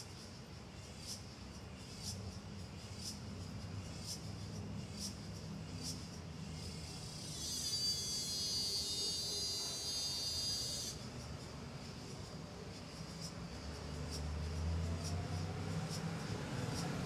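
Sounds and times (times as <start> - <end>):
cicada buzzing: 2.8 - 17.0.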